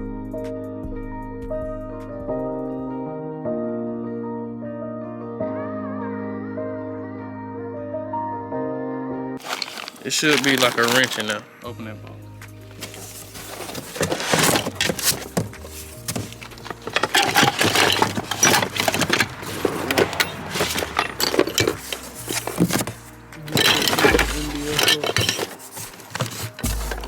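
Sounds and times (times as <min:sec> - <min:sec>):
sharp knocks and clatter: 0:12.7 - 0:27.0.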